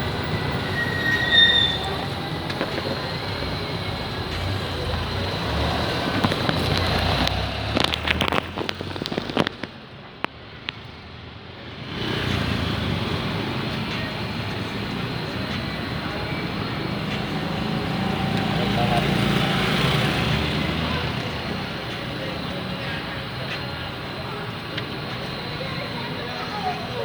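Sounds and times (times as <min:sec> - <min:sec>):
street traffic: 0:00.0 - 0:27.0
sharp crackles and clicks: 0:05.8 - 0:10.8.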